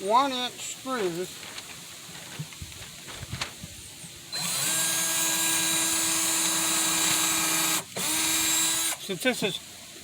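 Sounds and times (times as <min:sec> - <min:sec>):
power drill driving screw into wood: 0:04.3 - 0:09.0.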